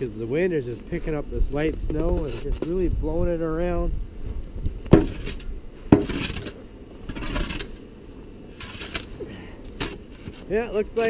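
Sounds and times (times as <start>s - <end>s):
shovel scraping through snow: 2.0s - 2.8s, 5.0s - 7.8s, 8.5s - 9.2s
snow shovel knocking on ground: 4.9s - 5.3s.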